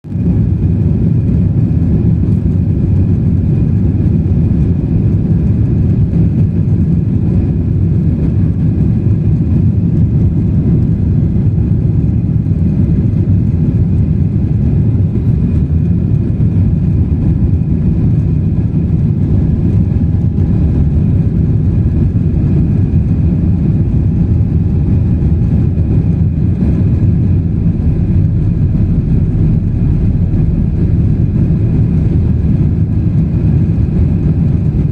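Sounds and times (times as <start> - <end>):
airplane engines rumbling: 0.1 - 34.9
faint high whine: 26.6 - 34.1.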